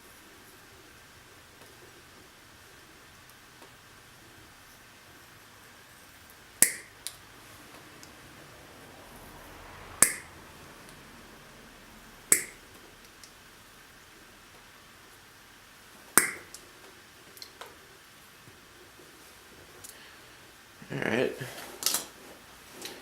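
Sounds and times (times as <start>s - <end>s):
faint steady hiss: 0.0s - 23.0s
sharp clicks: 6.6s - 7.2s, 12.3s - 13.4s, 16.2s - 16.7s.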